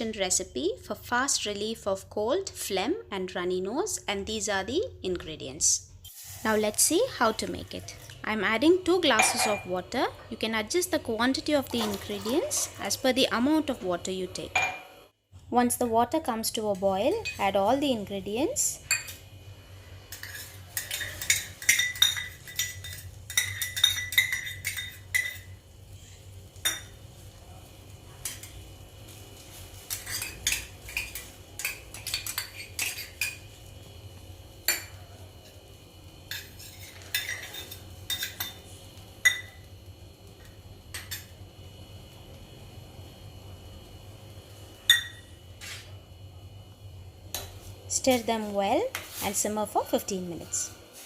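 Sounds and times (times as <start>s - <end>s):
metal spoon clinking against pot: 9.1s - 9.7s, 20.2s - 25.5s.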